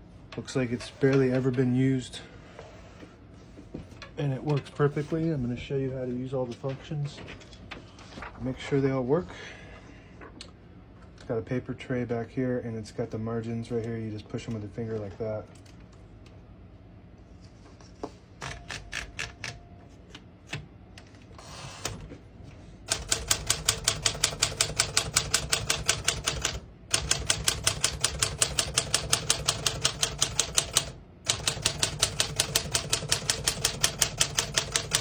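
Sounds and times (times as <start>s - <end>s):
manual typewriter typing: 18.4s - 19.6s, 22.9s - 35.0s.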